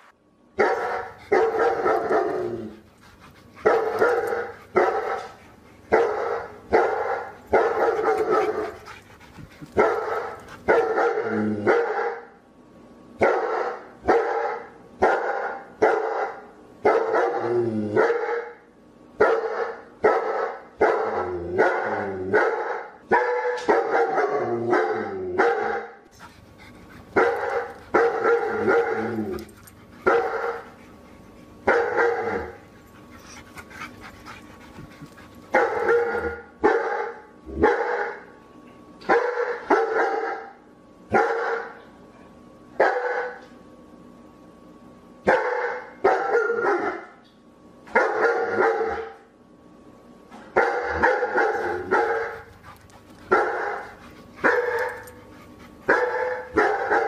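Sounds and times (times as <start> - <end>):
dog barking: 0.6 - 2.6, 3.6 - 5.3, 5.9 - 8.8, 9.8 - 12.3, 13.2 - 18.6, 19.2 - 26.0, 27.2 - 29.2, 30.0 - 30.7, 31.7 - 32.6, 35.5 - 38.2, 39.1 - 40.5, 41.1 - 41.8, 42.8 - 43.4, 45.3 - 47.2, 48.0 - 49.2, 50.6 - 52.5, 53.3 - 55.2, 55.9 - 57.0.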